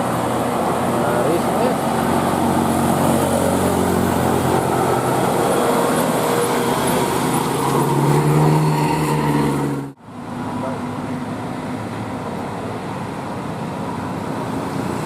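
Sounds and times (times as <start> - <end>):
bus engine running: 0.0 - 8.6
traffic noise: 0.0 - 15.0.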